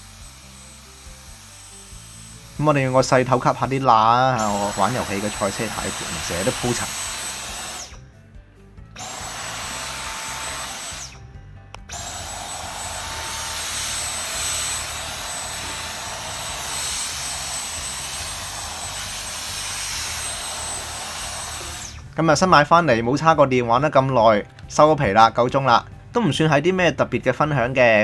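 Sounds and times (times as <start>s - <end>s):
cordless vacuum running: 0.0s - 8.1s, 8.8s - 22.2s.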